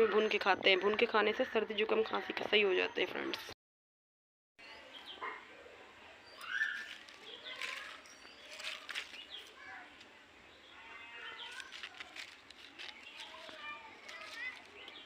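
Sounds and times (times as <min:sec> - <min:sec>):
small birds chirping: 0:04.6 - 0:15.0.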